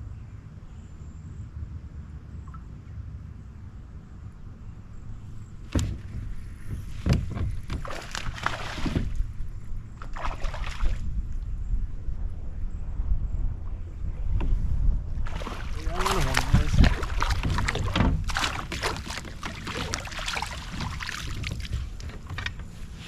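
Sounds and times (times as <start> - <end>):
low steady rumble: 0.0 - 23.0
water splashing at a kayak: 5.6 - 11.4, 15.2 - 23.0.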